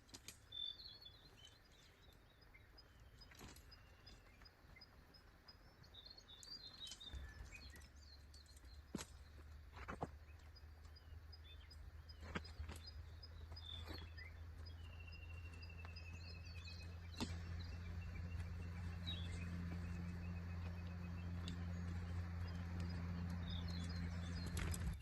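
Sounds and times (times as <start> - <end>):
small birds chirping: 0.0 - 25.0
low rumble: 14.6 - 25.0.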